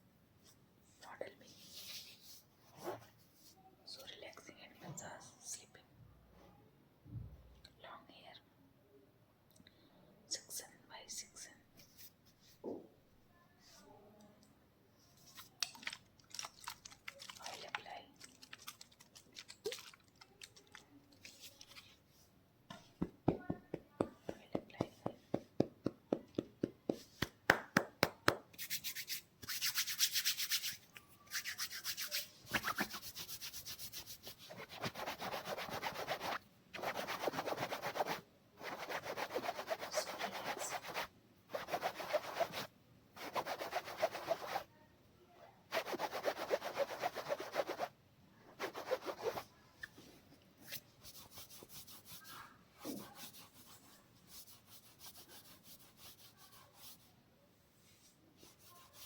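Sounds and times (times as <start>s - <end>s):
hands rubbing oiled hair: 28.4s - 41.0s
scratching on scalp: 28.6s - 44.6s, 45.7s - 47.9s, 48.6s - 49.5s, 50.6s - 57.1s, 58.4s - 59.0s.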